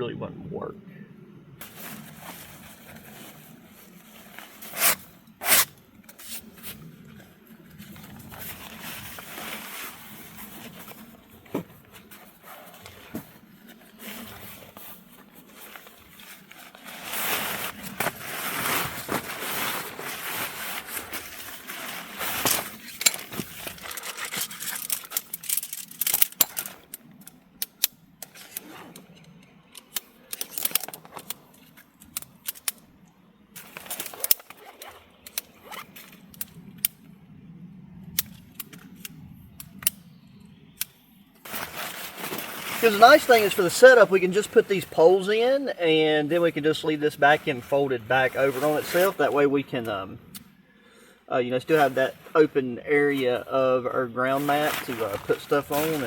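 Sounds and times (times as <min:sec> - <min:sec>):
nylon fabric rustling and scraping: 0:01.6 - 0:27.0, 0:33.6 - 0:36.3, 0:41.4 - 0:45.7, 0:46.3 - 0:50.1, 0:51.7 - 0:53.5, 0:54.1 - 0:56.0.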